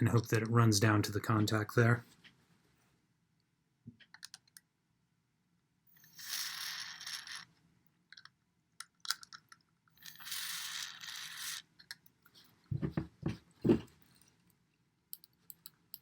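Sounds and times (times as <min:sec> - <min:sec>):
small clicks: 0:04.0 - 0:04.7, 0:14.4 - 0:16.0.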